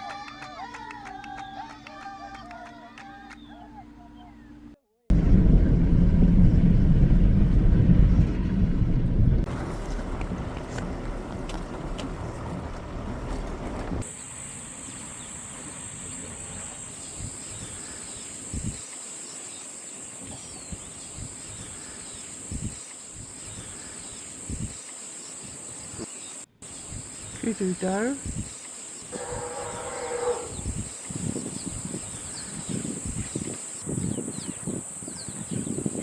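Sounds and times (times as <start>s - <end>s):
wind rumbling on microphone: 5.1s - 14.0s, 18.4s - 18.8s, 20.2s - 21.8s, 22.4s - 23.8s, 24.4s - 24.8s, 28.2s - 36.0s.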